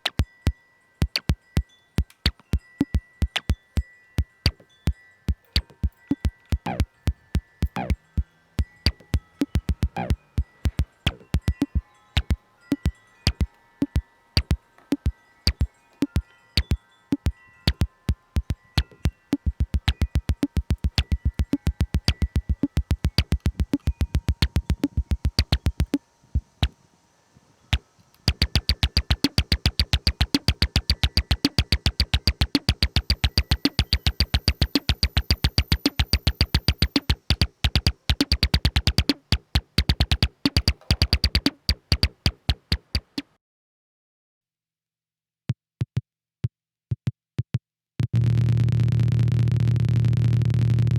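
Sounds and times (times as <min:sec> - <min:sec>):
clicky synthesizer percussion: 0:02.0 - 0:03.6, 0:05.4 - 0:26.8, 0:27.7 - 0:43.3
faint held synthesizer tones: 0:04.2 - 0:43.3.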